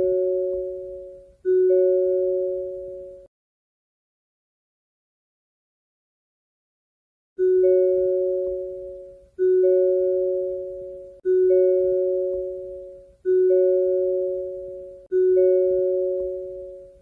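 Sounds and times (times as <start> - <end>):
car door warning chime: 7.4 - 17.0.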